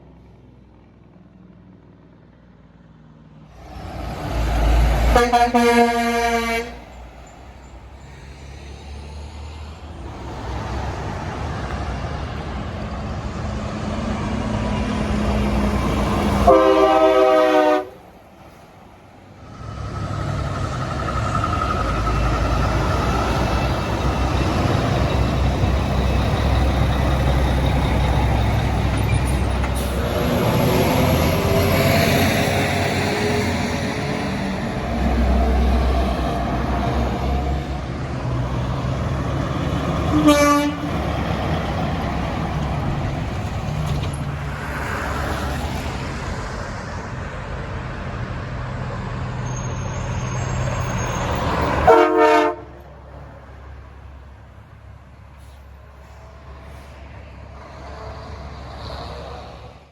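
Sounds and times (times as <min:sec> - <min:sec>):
passing truck engines and tyres: 0:00.0 - 0:59.9
truck train horn blasts: 0:04.5 - 0:07.1, 0:16.3 - 0:18.2, 0:39.9 - 0:41.1, 0:51.7 - 0:52.9.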